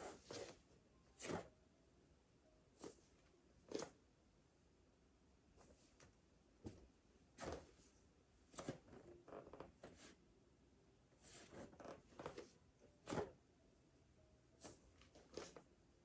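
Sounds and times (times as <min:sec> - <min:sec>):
clothing and mat rustling: 0:00.0 - 0:00.6, 0:05.6 - 0:07.9.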